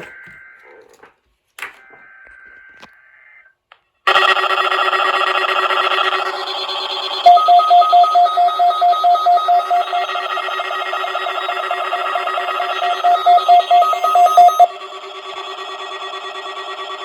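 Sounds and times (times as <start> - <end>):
radio droning audio: 4.1 - 17.0
rapid electronic beeping: 4.1 - 17.0.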